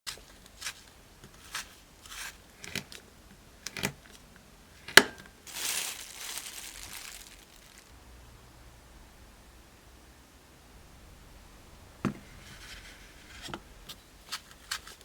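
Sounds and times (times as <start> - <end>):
crinkling and crunching handling: 0.1 - 8.0, 12.1 - 15.0
long rustle: 5.4 - 7.9.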